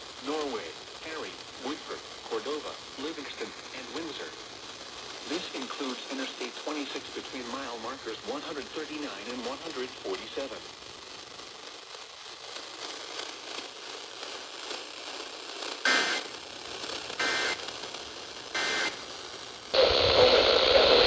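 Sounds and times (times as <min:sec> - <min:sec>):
radio hiss: 0:00.0 - 0:21.0
short digital data bursts: 0:15.7 - 0:19.1.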